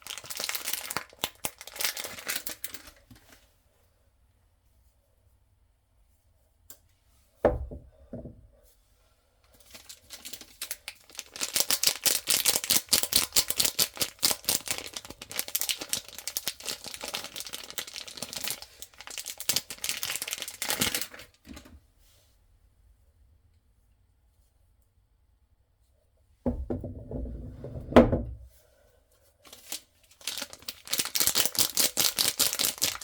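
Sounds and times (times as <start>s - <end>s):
wrapper tearing and crinkling: 0.0s - 3.0s, 9.6s - 21.3s, 29.4s - 33.0s
thump: 7.4s - 8.4s, 26.4s - 28.4s.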